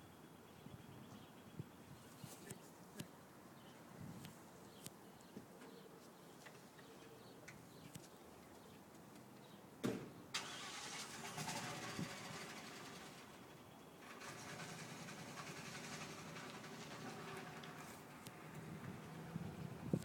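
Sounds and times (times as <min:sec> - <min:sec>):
vehicle engine with hiss: 0:10.4 - 0:19.8.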